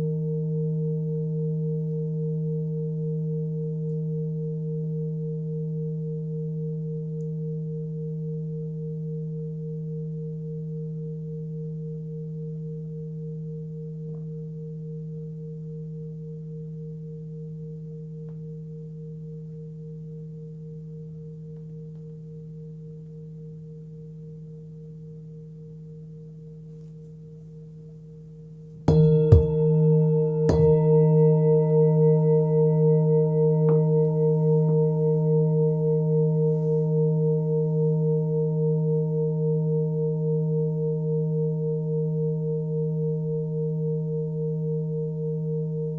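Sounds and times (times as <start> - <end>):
singing bowl struck: 28.9 - 35.6
singing bowl ringing: 28.9 - 36.4.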